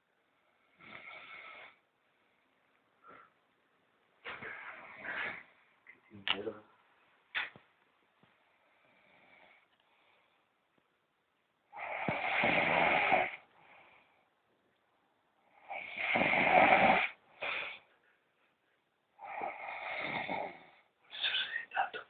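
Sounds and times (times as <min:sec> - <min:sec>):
man snoring: 0:11.8 - 0:13.4, 0:15.6 - 0:17.2, 0:19.2 - 0:20.9.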